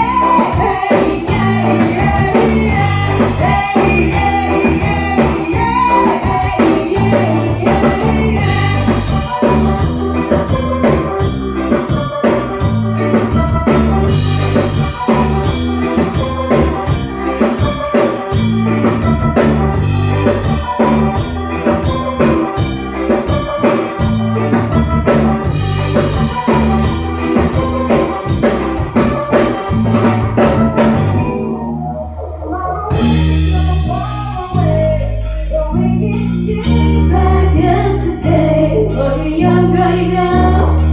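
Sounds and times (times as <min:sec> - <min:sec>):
loud music with drum beat: 0:00.0 - 0:31.5, 0:32.9 - 0:40.9.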